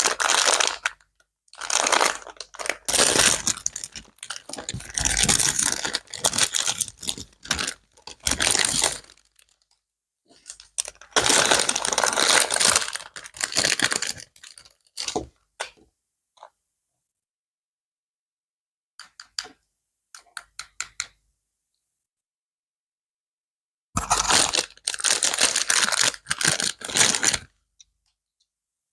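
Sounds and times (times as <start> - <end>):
packaging rustling and crinkling: 0.0 - 1.0, 1.6 - 9.6, 10.3 - 15.3, 24.0 - 27.5.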